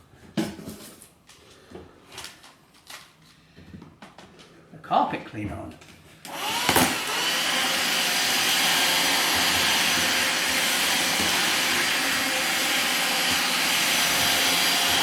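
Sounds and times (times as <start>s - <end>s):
vacuum cleaner running: 6.3s - 15.0s.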